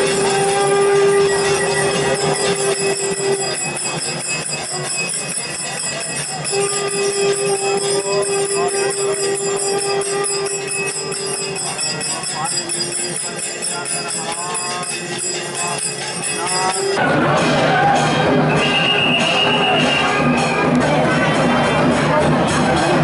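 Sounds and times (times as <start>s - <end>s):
long held note: 0.0s - 3.6s, 6.4s - 11.7s
bells jingling: 0.0s - 23.0s
crowd murmur: 0.0s - 23.0s.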